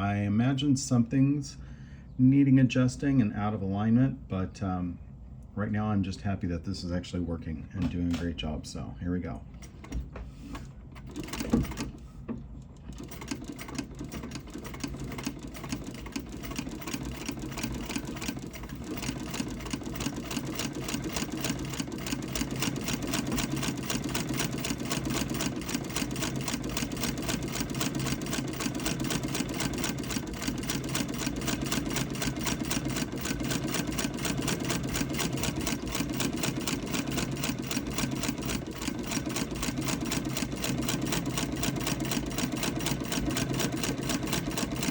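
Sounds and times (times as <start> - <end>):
sewing machine thump: 9.8 - 15.5
sewing machine clattering: 10.9 - 12.0, 12.8 - 44.9.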